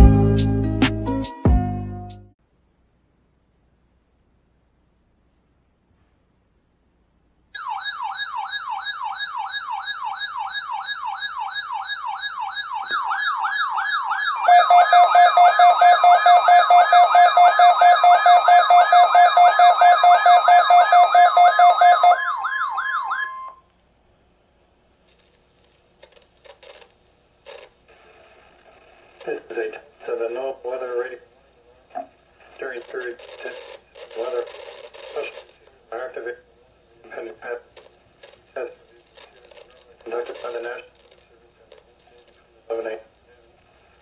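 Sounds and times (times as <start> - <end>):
electronic siren sweeping tone: 7.6 - 23.6.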